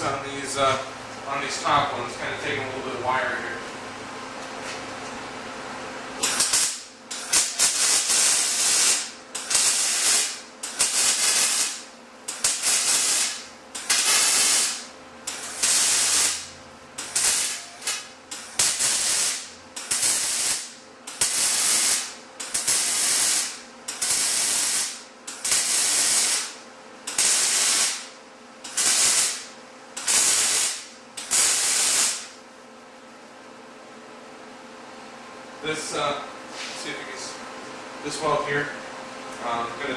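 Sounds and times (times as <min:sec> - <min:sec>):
welder arc hissing and crackling: 0:06.2 - 0:32.4.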